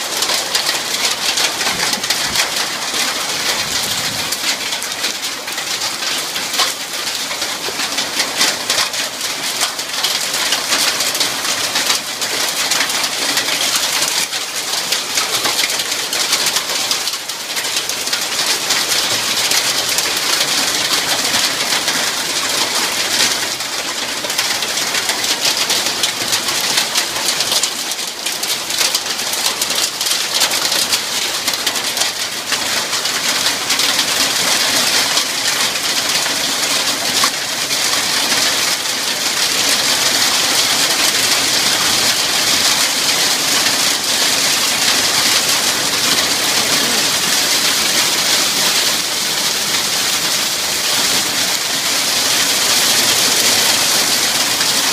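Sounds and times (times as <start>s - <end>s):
hailstones ticking: 0.0s - 54.9s
heavy rain: 0.0s - 54.9s.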